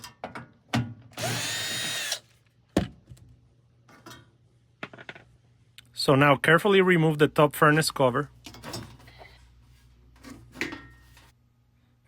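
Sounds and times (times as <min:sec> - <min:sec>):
cordless drill motor whine: 0:01.2 - 0:02.2.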